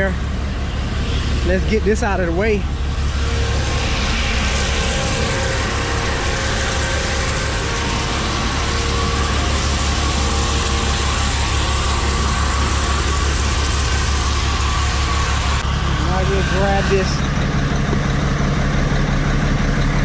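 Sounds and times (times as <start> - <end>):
truck diesel engine idling: 0.0 - 20.0.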